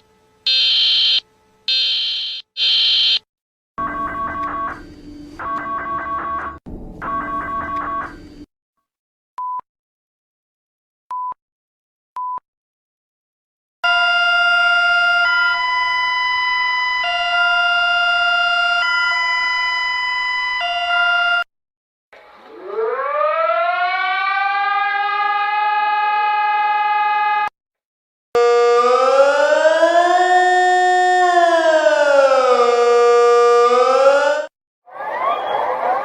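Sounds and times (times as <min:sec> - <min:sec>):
siren-like tone winding up: 0:13.9 - 0:21.5, 0:22.4 - 0:27.5, 0:28.4 - 0:36.0.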